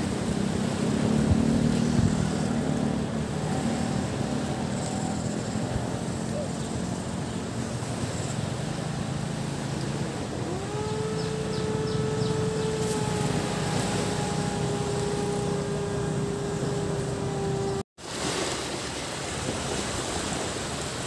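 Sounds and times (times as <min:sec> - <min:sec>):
surf washing: 0:00.0 - 0:21.0
motor running: 0:00.2 - 0:17.8.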